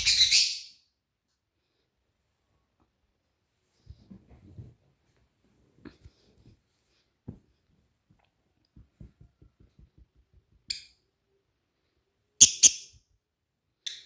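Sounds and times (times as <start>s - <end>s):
soft light taps: 7.2s - 10.8s
cockatiel chirping: 12.4s - 12.9s.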